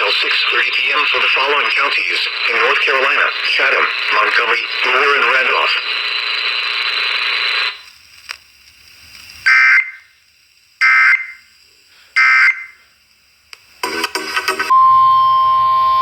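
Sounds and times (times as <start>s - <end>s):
steady weather radio alarm tone: 0.0s - 7.9s, 9.4s - 10.2s, 10.8s - 11.5s, 12.2s - 12.9s, 14.7s - 16.0s.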